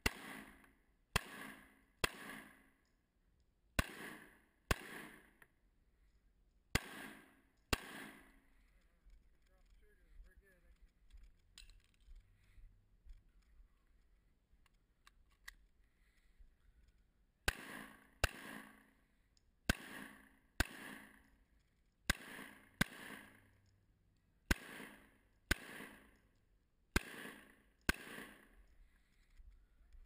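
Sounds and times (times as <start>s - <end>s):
pistol shots with echo: 0.0s - 2.6s, 3.8s - 5.4s, 6.7s - 8.3s, 17.4s - 18.9s, 19.7s - 21.2s, 22.1s - 23.4s, 24.5s - 26.2s, 26.9s - 28.6s
faint clicks: 8.5s - 17.2s, 27.8s - 30.0s.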